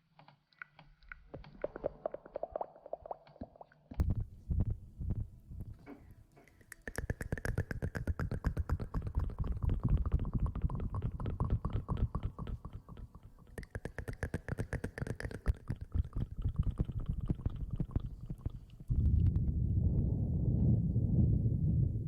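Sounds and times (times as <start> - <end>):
asmr scratching and rubbing: 7.0 - 19.0.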